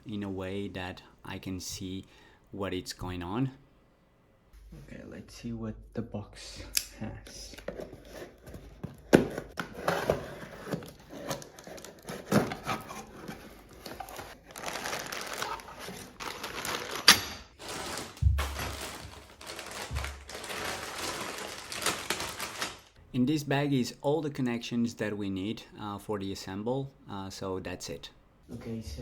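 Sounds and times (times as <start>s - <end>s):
packaging rustling and crinkling: 7.8s - 23.0s.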